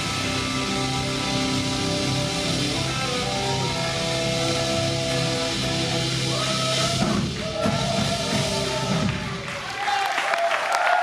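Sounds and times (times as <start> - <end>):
rock band sustained chord: 0.0 - 9.6
audience cheering: 2.7 - 11.0.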